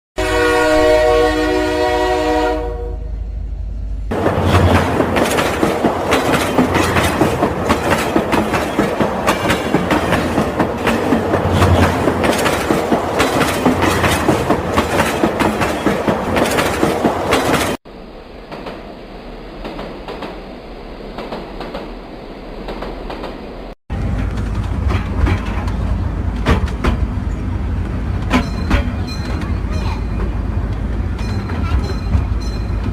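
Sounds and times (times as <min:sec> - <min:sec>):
train wheels clattering on rails: 0:04.1 - 0:17.8, 0:19.6 - 0:20.5, 0:21.1 - 0:22.0, 0:22.6 - 0:32.9.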